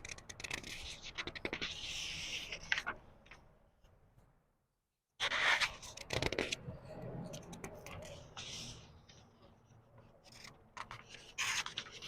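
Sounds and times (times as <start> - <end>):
book pages turning: 0.0 - 3.4, 5.2 - 9.3, 10.0 - 12.0.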